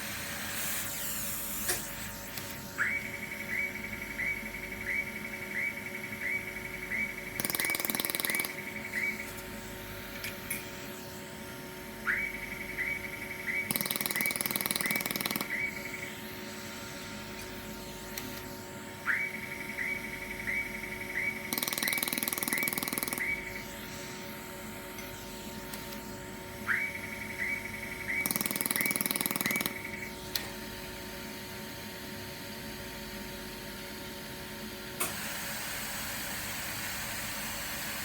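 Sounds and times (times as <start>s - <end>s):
machine hum: 0.0s - 38.0s
laser welder ticking: 7.2s - 11.2s, 13.6s - 16.6s, 17.2s - 18.6s, 21.2s - 26.2s, 28.0s - 30.5s.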